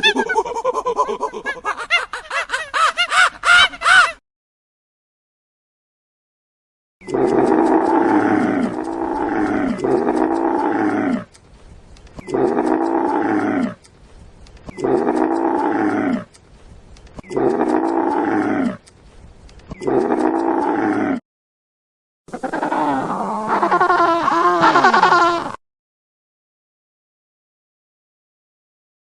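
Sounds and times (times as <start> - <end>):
animal calling loudly: 14.7 - 16.3, 22.3 - 25.6.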